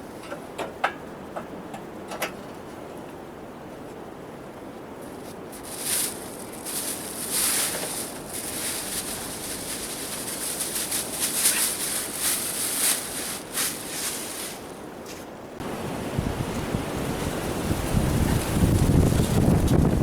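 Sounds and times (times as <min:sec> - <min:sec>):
strong wind gusting: 0:15.6 - 0:20.0.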